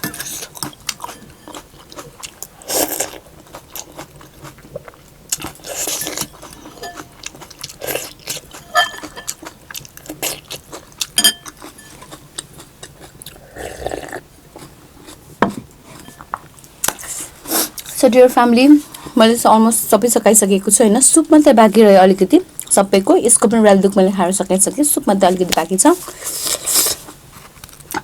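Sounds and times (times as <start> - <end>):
chewing and mouth clicks: 0.4 - 15.2
spoon clinking bowl: 6.8 - 7.1, 8.6 - 9.3, 11.2 - 12.0
slurping soup: 13.3 - 14.3, 26.0 - 27.2.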